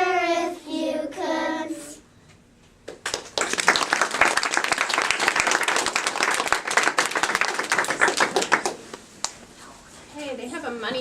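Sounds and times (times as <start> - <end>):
audience applauding: 2.9 - 9.0.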